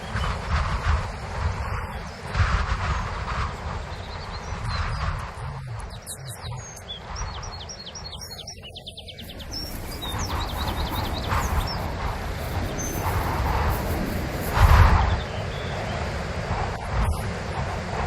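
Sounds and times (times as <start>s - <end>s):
small birds chirping: 0.0s - 18.0s
steady low rumble: 0.0s - 18.0s
wind blowing in gusts: 0.0s - 18.0s.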